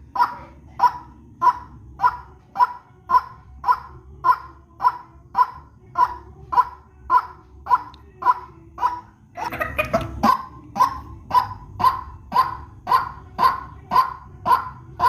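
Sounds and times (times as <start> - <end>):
bird harsh croaking call: 0.0 - 9.6, 10.2 - 15.0.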